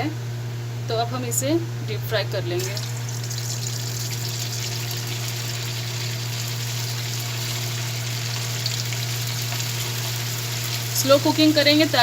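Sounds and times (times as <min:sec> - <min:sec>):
deep-frying sizzle: 0:02.6 - 0:12.0.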